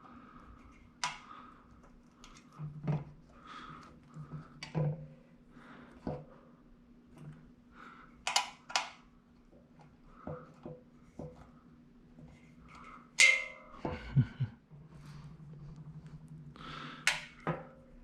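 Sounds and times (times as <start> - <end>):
faint steady hum: 0.0 - 18.0
clicks and knocks of metal parts: 8.3 - 9.0, 12.7 - 13.8
metallic clank with ringing: 13.2 - 13.8.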